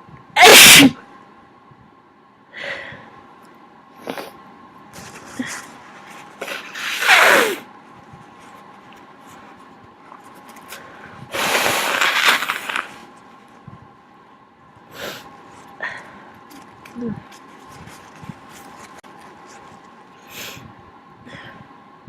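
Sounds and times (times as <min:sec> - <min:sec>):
person blowing nose: 0:00.4 - 0:00.9, 0:06.4 - 0:07.7, 0:11.3 - 0:13.0.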